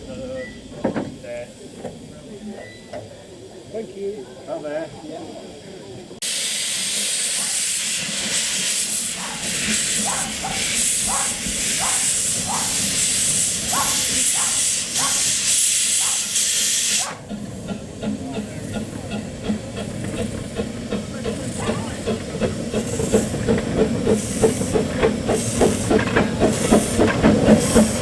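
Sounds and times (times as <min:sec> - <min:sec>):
steam locomotive hissing steam: 0:00.0 - 0:28.0.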